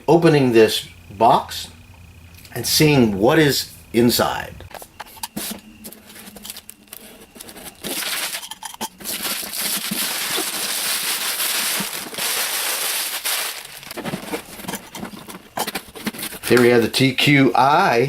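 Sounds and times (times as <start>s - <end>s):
packaging crinkling and rustling: 4.7s - 16.9s.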